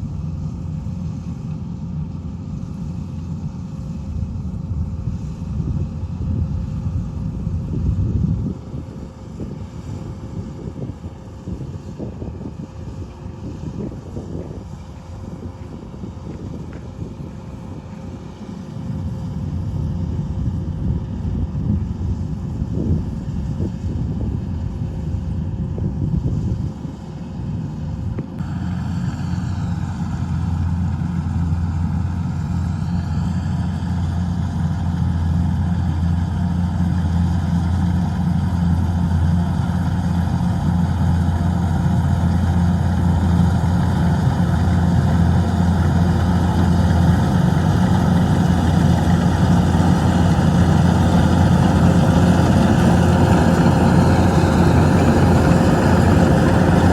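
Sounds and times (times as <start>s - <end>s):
engine running: 0.0s - 56.9s.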